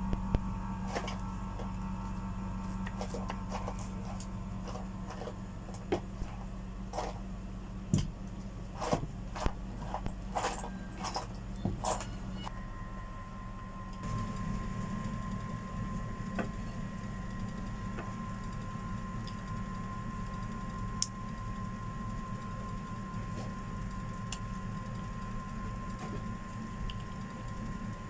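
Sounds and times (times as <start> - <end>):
thin steady whine: 0.0 - 28.0
small electric motor humming: 9.4 - 28.0.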